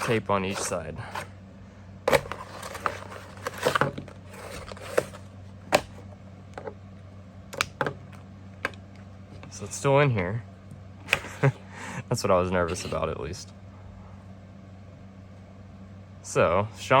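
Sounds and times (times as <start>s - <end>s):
packaging rustling: 2.1s - 5.9s.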